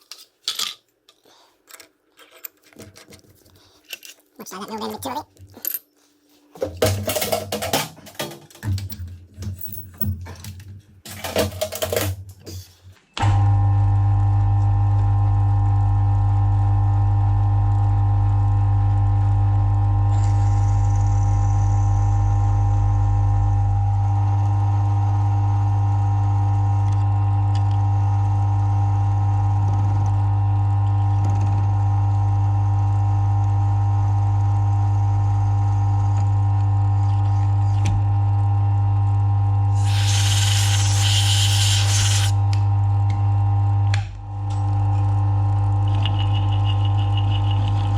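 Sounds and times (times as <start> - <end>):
mill-drill motor humming: 39.7 - 47.9.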